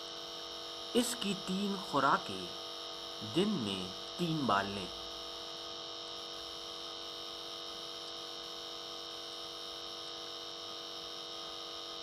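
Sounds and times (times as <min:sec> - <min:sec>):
high whine: 0:00.0 - 0:09.2
steady electrical hum: 0:00.0 - 0:12.0.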